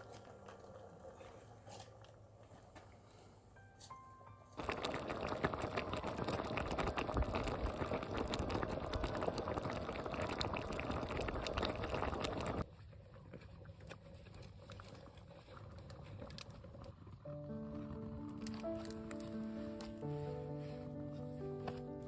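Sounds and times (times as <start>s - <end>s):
food bubbling and crackling: 4.6s - 19.4s.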